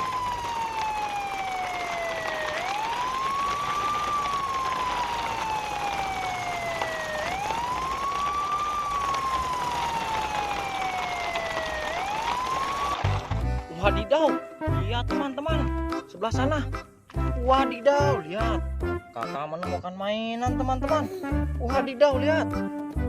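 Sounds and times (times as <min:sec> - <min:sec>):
siren wailing: 0:00.0 - 0:13.2.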